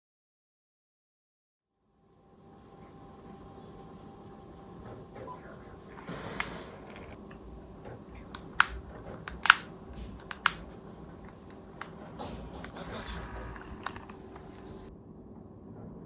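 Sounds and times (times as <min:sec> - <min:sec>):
faint steady hum: 0:01.8 - 0:16.0
plastic controller clicks and taps: 0:08.2 - 0:12.0, 0:12.6 - 0:14.8.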